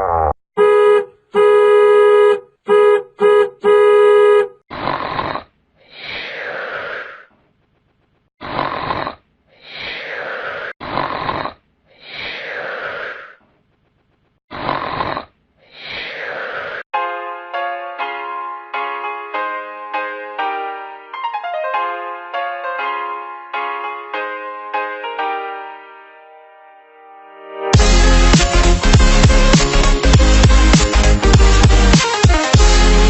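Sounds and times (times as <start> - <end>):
buzzy horn honking: 0.6 - 4.6.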